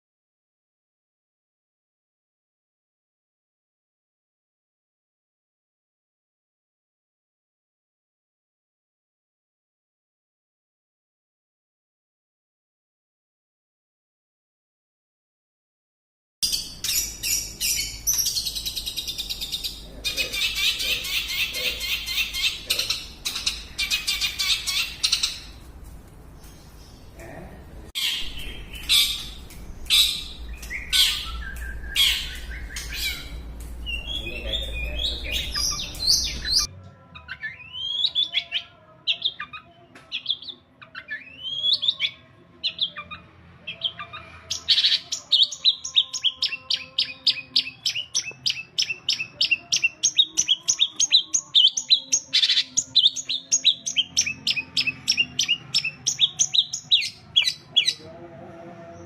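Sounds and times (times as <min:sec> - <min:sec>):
bird singing: 0:16.4 - 0:25.6, 0:28.0 - 0:58.1.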